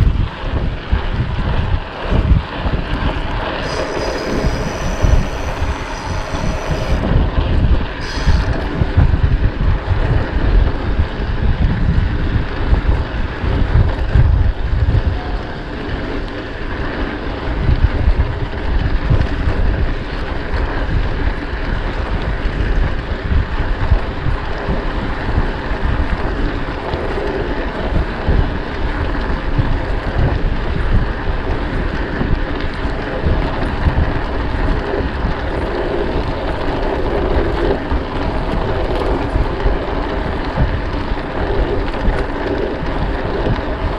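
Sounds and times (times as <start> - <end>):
bicycle riding noise: 0.0 - 43.9
wind buffeting microphone: 0.0 - 43.9
high buzz: 3.6 - 7.2, 8.0 - 8.8.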